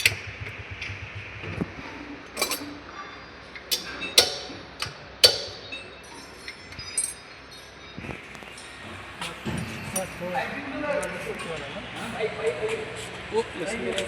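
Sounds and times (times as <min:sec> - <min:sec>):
metal tools clinking on metal: 0:02.4 - 0:02.8, 0:03.7 - 0:07.8, 0:09.9 - 0:10.2.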